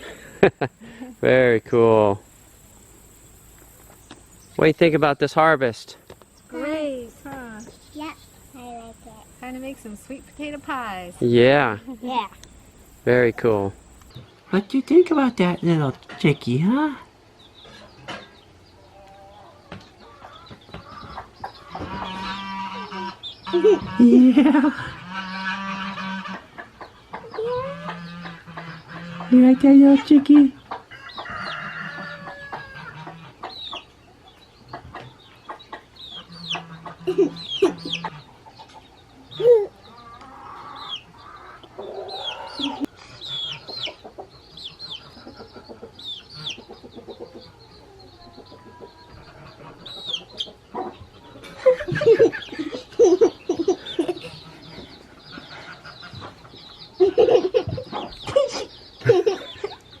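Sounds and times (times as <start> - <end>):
chicken clucking: 17.6 - 60.0.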